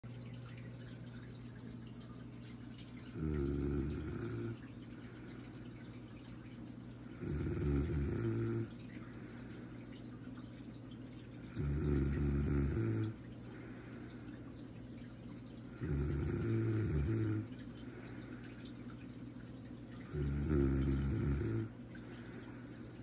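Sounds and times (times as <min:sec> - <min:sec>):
steady low hum: 0:00.0 - 0:23.0
person snoring: 0:03.1 - 0:04.6, 0:07.1 - 0:08.7, 0:11.5 - 0:13.2, 0:15.7 - 0:17.5, 0:20.1 - 0:21.7.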